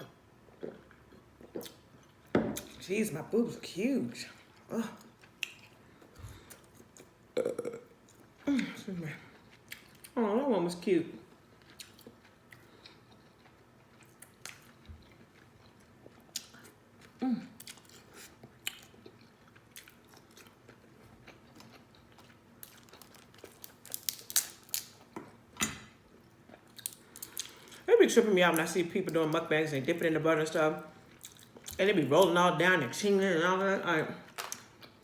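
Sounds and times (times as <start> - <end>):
chewing and lip smacking: 9.3 - 10.2, 11.6 - 24.6.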